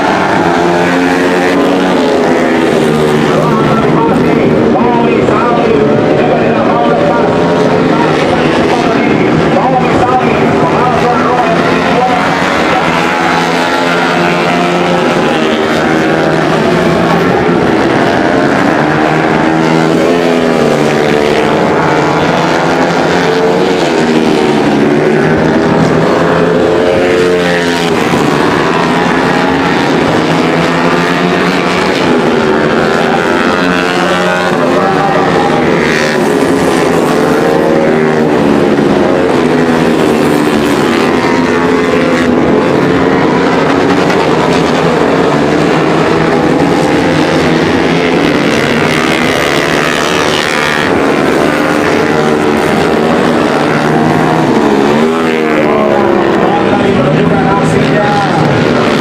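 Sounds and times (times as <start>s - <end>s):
racing motorcycle engines revving: 0.0s - 59.0s.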